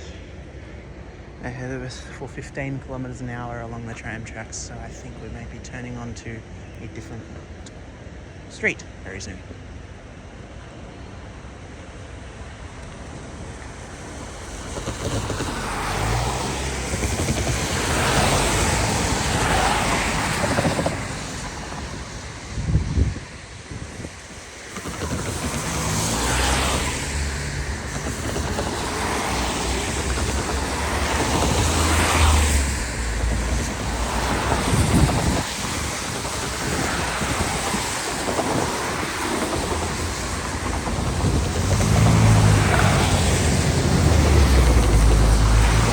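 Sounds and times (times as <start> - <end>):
wind rumbling on microphone: 13.2 - 45.9
vehicle passing: 13.7 - 22.7, 24.5 - 45.9.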